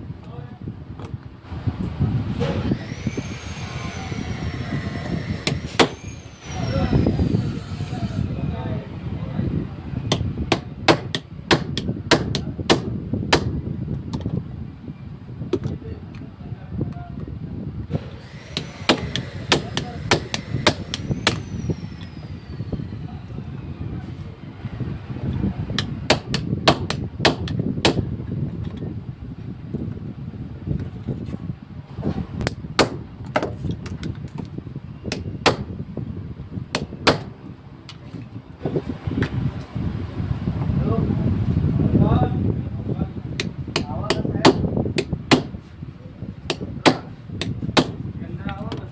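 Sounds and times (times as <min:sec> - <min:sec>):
steady low rumble: 0:00.0 - 0:48.9.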